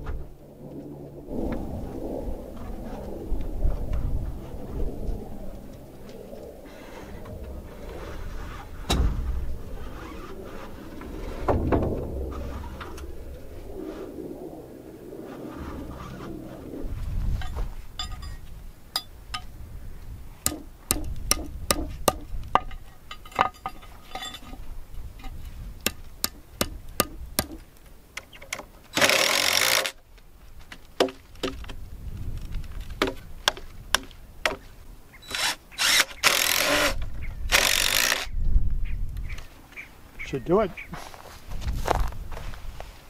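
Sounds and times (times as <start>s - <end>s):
knocks and clicks of wood: 30.6s - 31.8s, 32.5s - 34.7s
power tool running: 35.3s - 38.3s.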